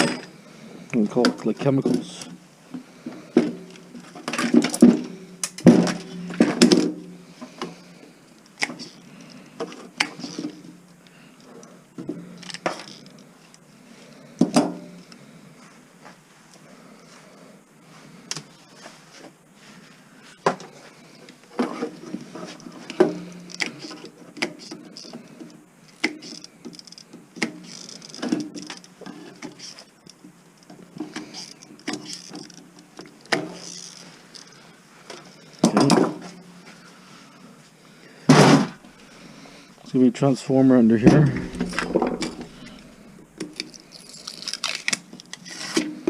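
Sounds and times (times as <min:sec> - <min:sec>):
loud knocks: 0:41.0 - 0:42.8
parts clicking and clattering: 0:41.0 - 0:46.0.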